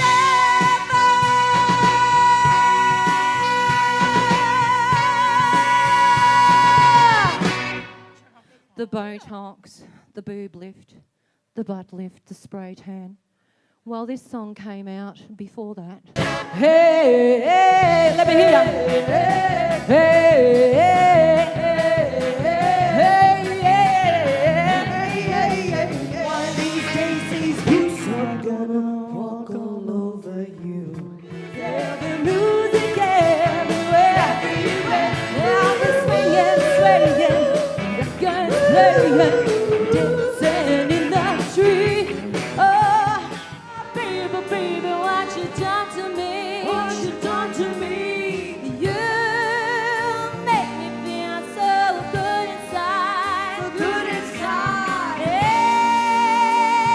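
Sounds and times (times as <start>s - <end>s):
pop songs with band: 0.0s - 8.3s, 16.2s - 56.9s.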